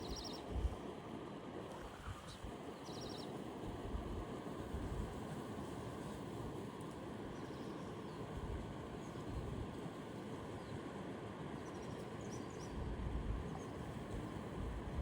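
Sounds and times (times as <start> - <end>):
faint bird chirps: 0.0 - 0.4, 2.2 - 3.3.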